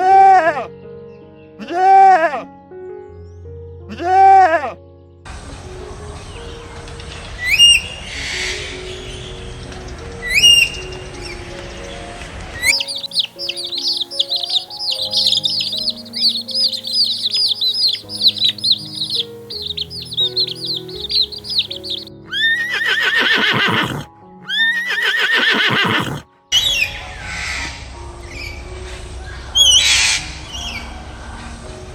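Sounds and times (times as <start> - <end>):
background music: 0.0 - 31.9
high-pitched bird chirping: 12.6 - 26.2
horse whinnies: 12.7 - 26.3.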